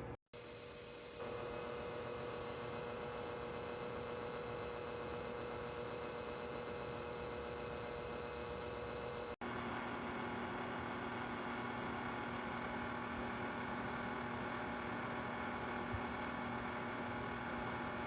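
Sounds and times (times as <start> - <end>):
space heater fan whirring: 0.0 - 18.0.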